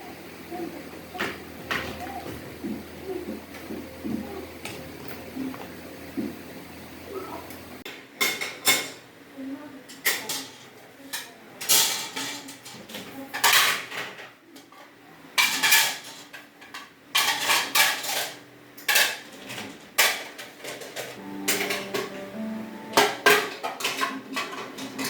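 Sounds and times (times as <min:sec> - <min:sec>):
dishes clattering: 0:08.2 - 0:09.0, 0:10.0 - 0:14.3, 0:15.4 - 0:22.2, 0:23.0 - 0:25.0.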